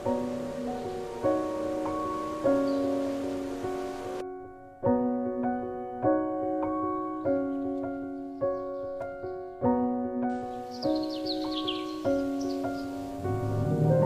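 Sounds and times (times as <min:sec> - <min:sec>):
steady hiss like rain: 0:00.0 - 0:05.0, 0:10.4 - 0:14.0
soft piano chords: 0:00.0 - 0:14.0.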